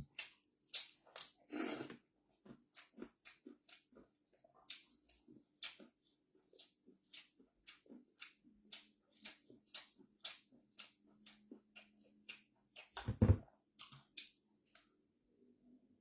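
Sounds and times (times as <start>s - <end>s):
wet chewing and mouth smacks: 0.1s - 13.0s, 13.8s - 14.4s
heavy thump: 13.0s - 13.4s.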